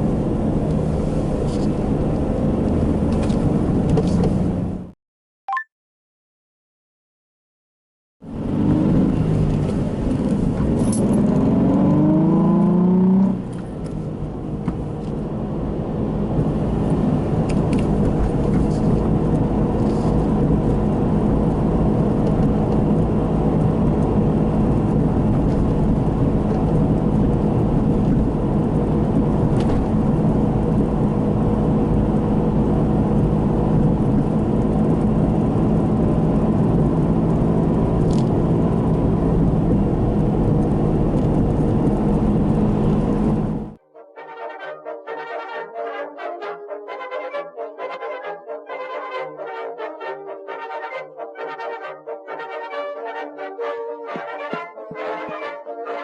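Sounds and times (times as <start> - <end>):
road noise: 0.0 - 5.0, 8.2 - 43.8, 45.2 - 56.0
car engine revving: 8.3 - 29.5.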